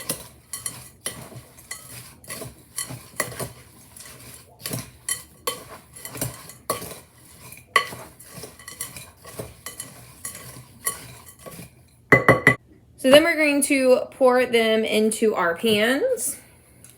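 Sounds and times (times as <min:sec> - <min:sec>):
spoon knocking and scraping bowl: 0:00.0 - 0:13.3
spoon stirring in mixing bowl: 0:00.0 - 0:13.8.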